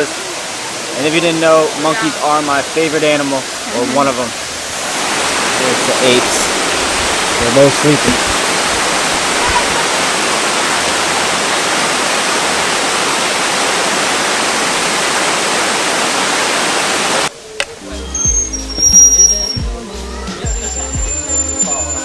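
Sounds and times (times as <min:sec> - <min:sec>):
waterfall rushing: 0:00.0 - 0:22.0
music with deep bass: 0:17.8 - 0:22.0.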